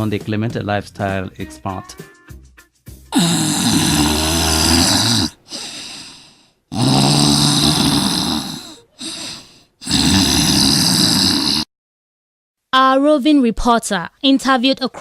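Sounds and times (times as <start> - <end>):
person snoring: 3.1 - 11.7
soft breath out: 4.8 - 6.6, 7.7 - 11.6.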